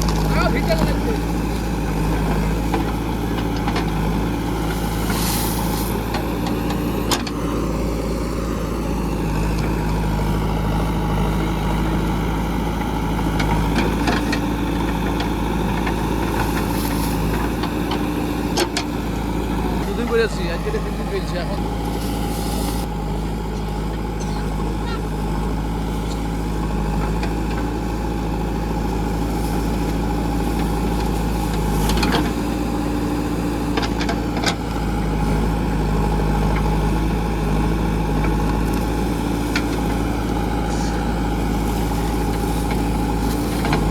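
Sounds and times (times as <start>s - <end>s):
diesel engine running at low revs: 0.0s - 43.9s.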